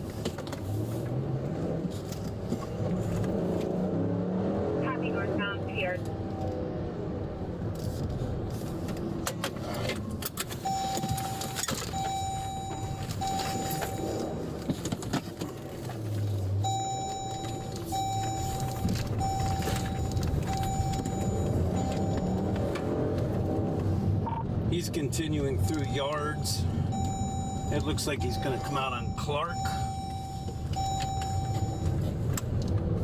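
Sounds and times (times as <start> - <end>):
vehicle engine rumble: 0.0 - 33.0
electronic beeps: 10.7 - 14.4, 16.6 - 22.5, 24.3 - 24.5, 25.6 - 32.0.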